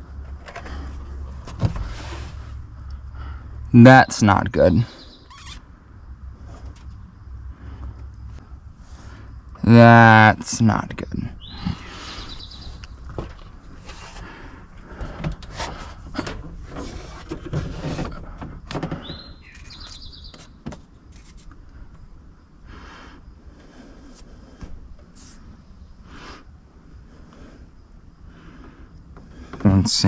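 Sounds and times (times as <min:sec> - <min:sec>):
bird calling: 0:04.8 - 0:05.6, 0:11.3 - 0:13.2, 0:18.9 - 0:20.6.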